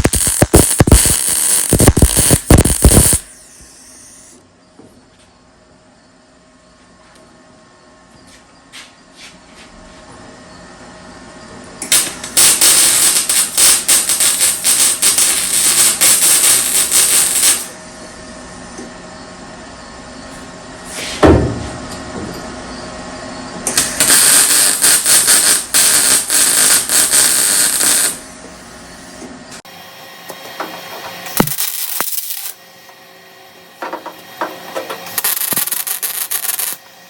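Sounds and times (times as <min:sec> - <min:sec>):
welding arc crackling: 0:00.0 - 0:03.9, 0:11.8 - 0:17.8, 0:23.7 - 0:28.3, 0:31.3 - 0:32.6, 0:34.3 - 0:36.9.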